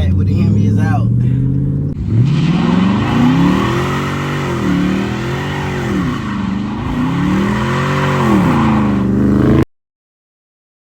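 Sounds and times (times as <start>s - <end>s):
car engine revving: 0.0s - 9.6s.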